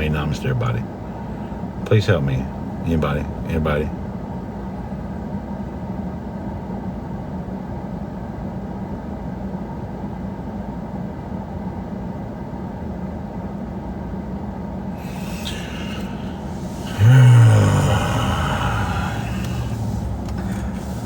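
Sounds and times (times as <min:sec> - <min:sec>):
car road and engine noise: 0:14.9 - 0:21.0.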